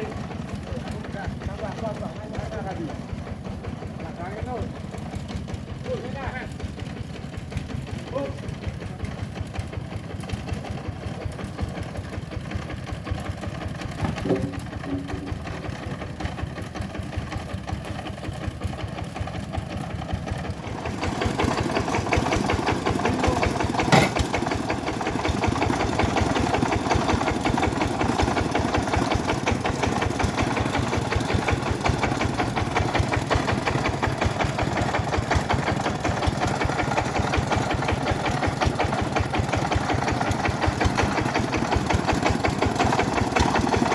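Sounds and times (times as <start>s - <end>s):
engine-driven bandsaw mill knocking: 0.0s - 43.9s
sharp knock: 14.0s - 15.3s.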